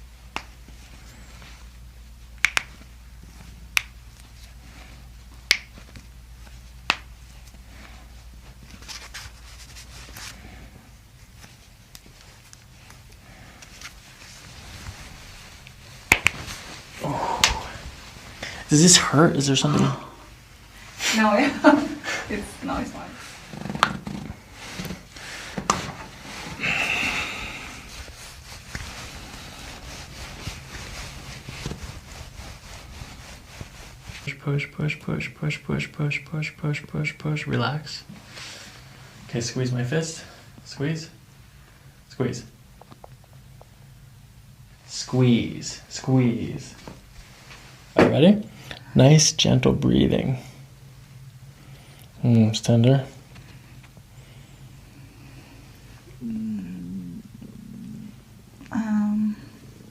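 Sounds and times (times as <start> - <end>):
soft rustling: 0.0 - 34.4, 46.4 - 48.0
hands rubbing skin and clothing: 0.2 - 19.9, 20.5 - 35.0.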